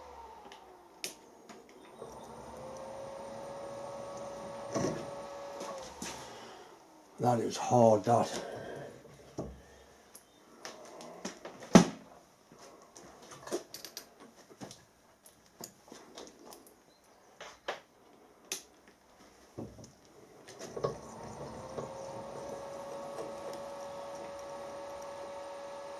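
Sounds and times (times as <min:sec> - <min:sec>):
machine humming: 0:00.0 - 0:07.2, 0:20.4 - 0:25.9
metal tools clicking and knocking: 0:13.6 - 0:14.1.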